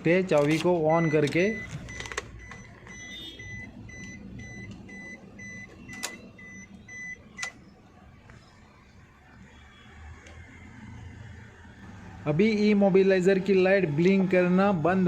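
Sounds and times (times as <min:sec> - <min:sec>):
car warning buzzer beeping: 0:00.9 - 0:07.5.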